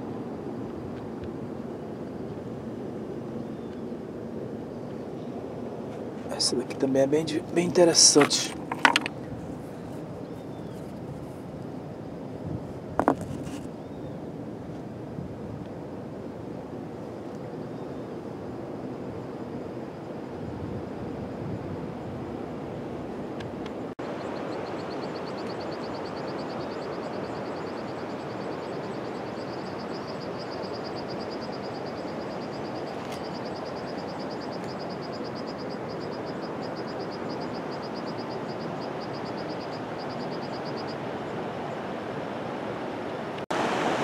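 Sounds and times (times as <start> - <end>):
waterfall rushing: 43.5 - 44.0.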